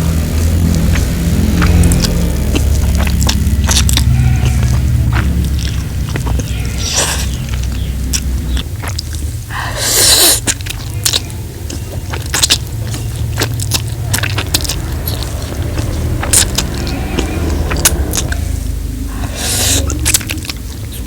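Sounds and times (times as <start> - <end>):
rush of noise: 0.0 - 8.6, 12.4 - 20.6
steady low hum: 0.0 - 21.0
wet mouth clicks and chewing: 0.0 - 21.0.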